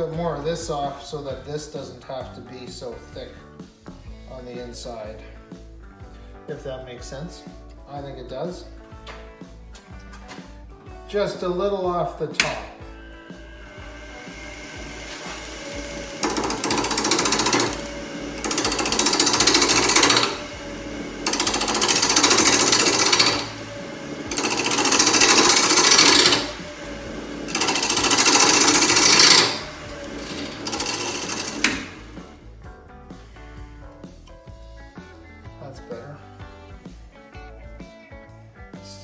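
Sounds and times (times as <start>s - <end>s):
lathe humming: 12.4s - 32.4s
gouge cutting wood rattle: 13.4s - 32.4s.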